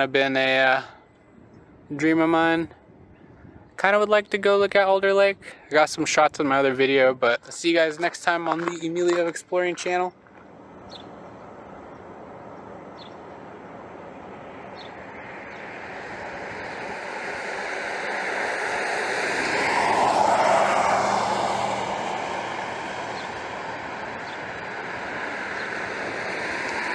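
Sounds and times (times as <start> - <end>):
passing vehicle road noise: 6.6 - 26.9.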